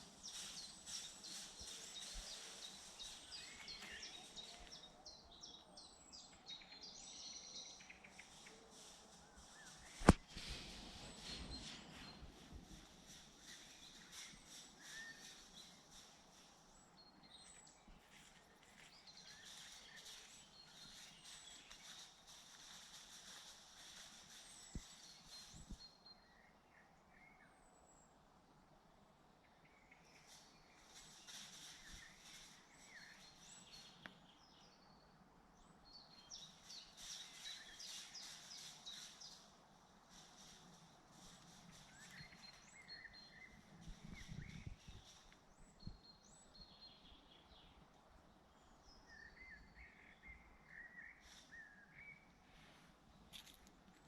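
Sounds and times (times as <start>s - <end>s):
faint birds whistling and chirping: 0.0s - 54.0s
steady hiss: 8.1s - 16.8s, 19.3s - 25.7s, 36.5s - 42.8s.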